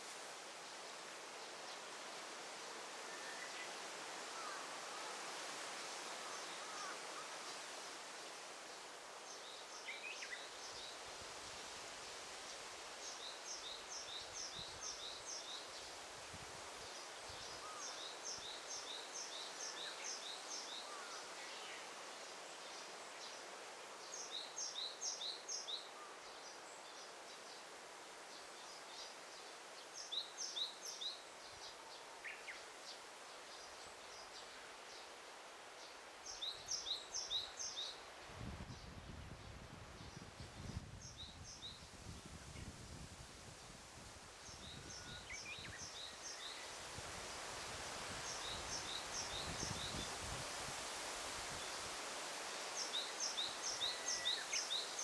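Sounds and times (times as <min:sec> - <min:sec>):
forest background hiss: 0:00.0 - 0:55.0
songbird singing: 0:03.0 - 0:05.2, 0:08.7 - 0:11.0, 0:16.8 - 0:43.0, 0:44.4 - 0:47.4, 0:48.1 - 0:50.3, 0:52.4 - 0:55.0.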